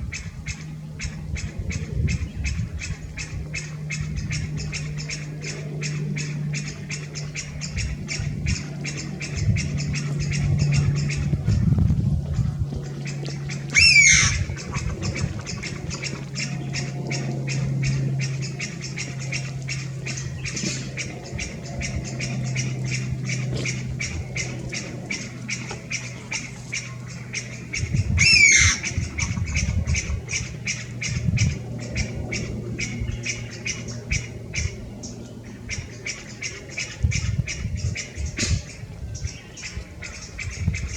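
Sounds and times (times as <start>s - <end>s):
distant repeated bird calls: 0.0s - 40.9s
loud harsh bird call: 13.0s - 40.9s.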